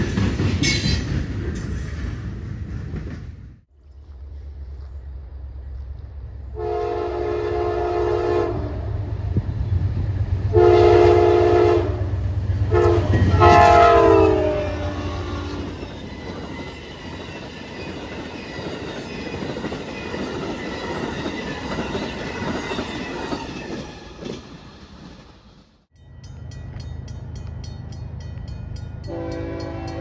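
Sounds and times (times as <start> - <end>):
train wheels clicking over rails: 0.0 - 3.5
train rumbling on rails: 0.0 - 30.0
train horn: 6.5 - 9.1, 10.5 - 15.8, 29.1 - 30.0.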